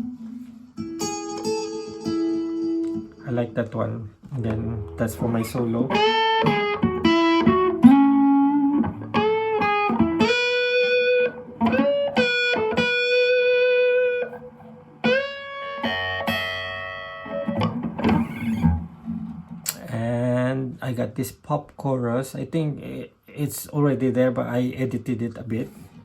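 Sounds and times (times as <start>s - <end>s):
electric guitar lead solo: 0.0s - 3.6s, 4.4s - 18.9s.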